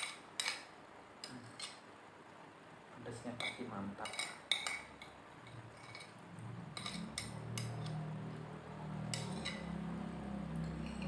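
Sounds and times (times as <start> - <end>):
cutlery clinking on plates: 0.0 - 1.8, 3.4 - 6.2, 6.8 - 8.1, 9.0 - 9.8, 10.6 - 11.0.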